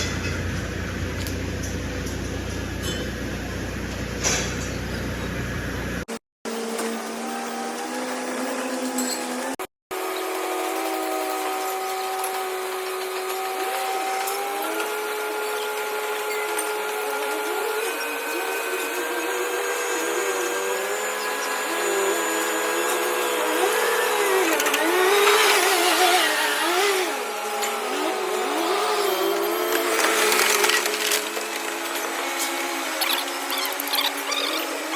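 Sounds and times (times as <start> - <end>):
crane diesel engine running: 0.0 - 6.1, 14.9 - 34.9.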